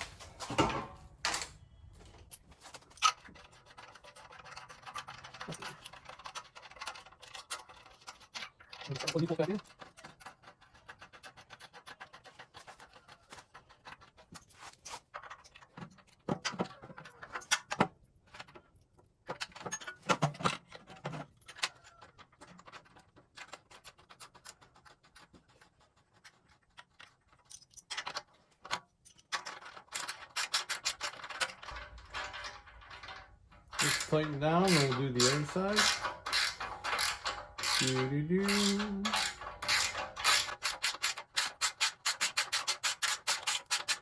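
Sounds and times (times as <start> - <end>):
metal clinks: 31.6 - 41.0
ratchet wrench clicking: 31.7 - 44.0.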